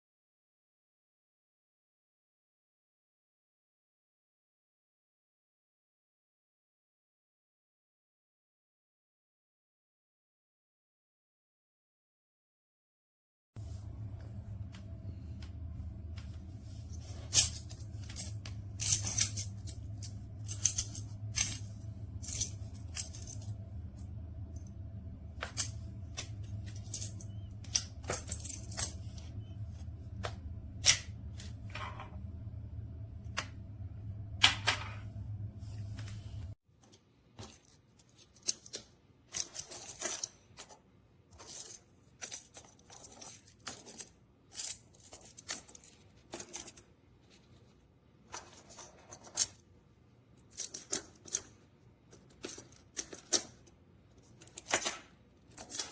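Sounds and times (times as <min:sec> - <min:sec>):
steady low hum: 0:13.6 - 0:36.6.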